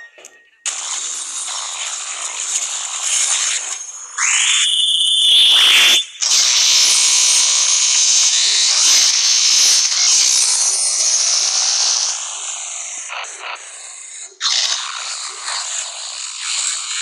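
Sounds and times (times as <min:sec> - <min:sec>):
distorted dense midi ringtone: 0:00.0 - 0:01.0.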